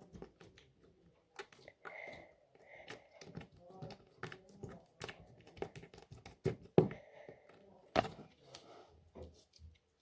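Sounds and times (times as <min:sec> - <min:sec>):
slime clicking and squishing: 0:00.0 - 0:06.8.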